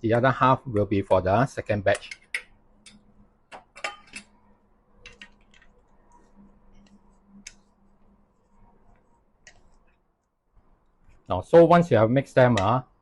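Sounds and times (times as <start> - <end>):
utensil tapping and scraping a pot: 1.8 - 4.4, 5.0 - 10.0.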